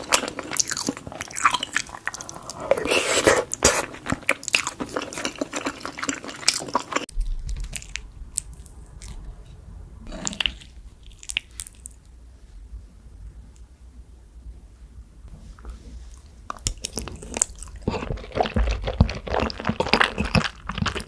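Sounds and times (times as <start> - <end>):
low hum: 7.1 - 16.4
wet biting and chewing: 10.1 - 12.0, 16.5 - 21.0.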